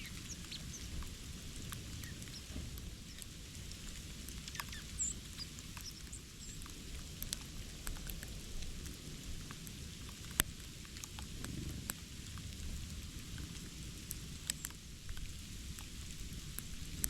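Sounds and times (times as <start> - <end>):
small birds chirping: 0.0 - 6.7
light ticks and taps: 0.2 - 12.5, 14.1 - 15.9.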